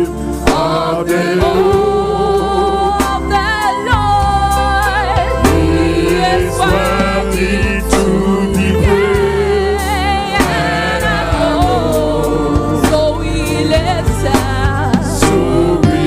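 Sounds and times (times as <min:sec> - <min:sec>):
choir singing: 0:00.0 - 0:16.0
steady bass: 0:00.0 - 0:16.0
drum hits: 0:10.4 - 0:16.0.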